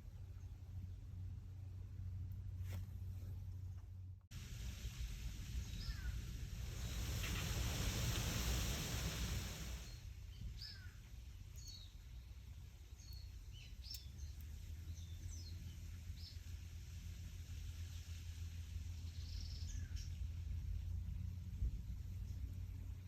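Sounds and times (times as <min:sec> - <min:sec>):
low steady rumble: 0:00.0 - 0:23.0
wind through leaves: 0:04.3 - 0:23.0
small birds chirping: 0:05.5 - 0:16.7, 0:19.0 - 0:21.1.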